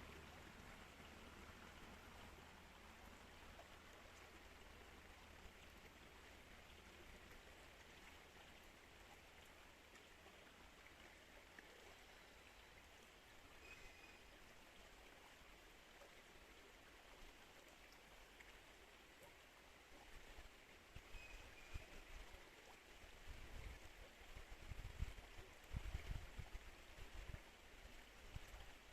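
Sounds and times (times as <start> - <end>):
flowing river water: 0.0 - 28.9.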